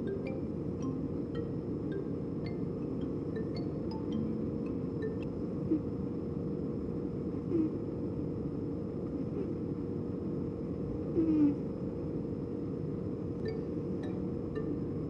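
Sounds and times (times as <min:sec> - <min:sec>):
low background noise: 0:00.0 - 0:15.0
cat snoring: 0:07.5 - 0:07.8, 0:11.1 - 0:11.6.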